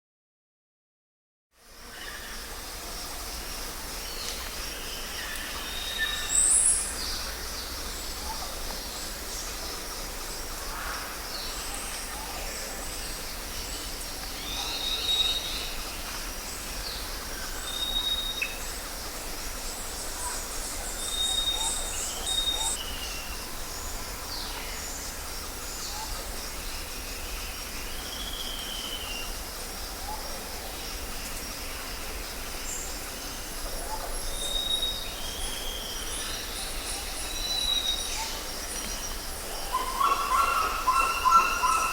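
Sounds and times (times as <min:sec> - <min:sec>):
steady background hiss: 0:01.6 - 0:41.9.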